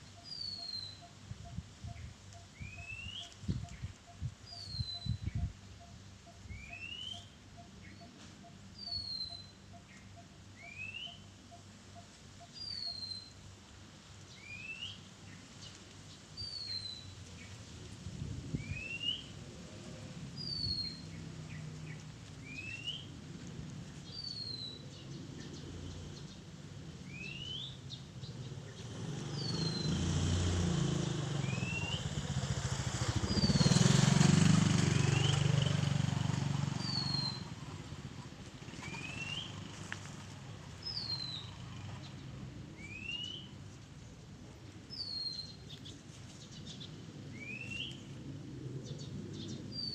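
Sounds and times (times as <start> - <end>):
bird singing whistled phrase: 6.5 - 7.3, 10.6 - 11.2, 18.6 - 19.3, 27.1 - 27.8, 31.4 - 32.1, 42.8 - 43.5, 47.4 - 48.0.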